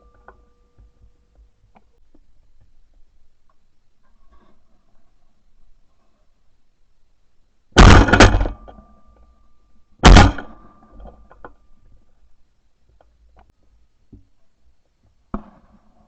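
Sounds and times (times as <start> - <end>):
shotgun shots with echo: 7.8 - 8.6, 10.0 - 10.6.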